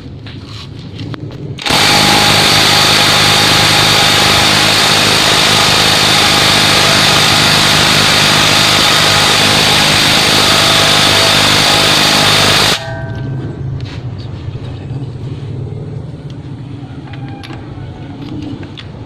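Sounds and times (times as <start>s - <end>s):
impact wrench hammering: 1.6s - 13.4s.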